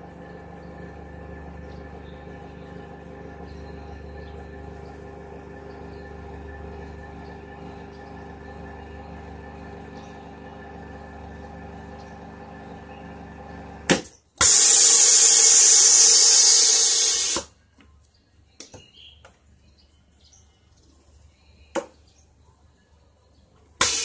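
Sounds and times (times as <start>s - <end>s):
vacuum sealer pump humming: 0.0s - 17.5s, 23.8s - 24.0s
hiss of air: 14.4s - 17.5s.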